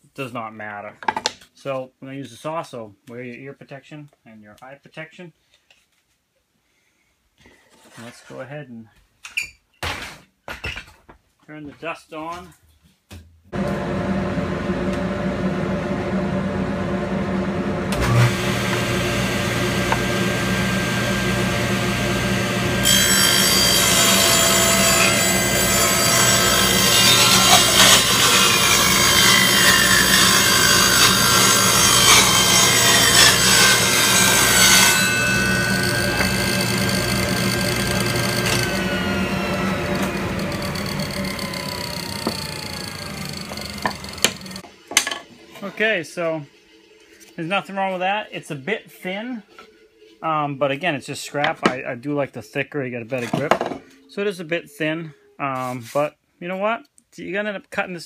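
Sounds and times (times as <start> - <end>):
dust collector running: 13.6 - 44.6
table saw running: 13.6 - 44.7
saw blade cutting board: 17.9 - 44.7.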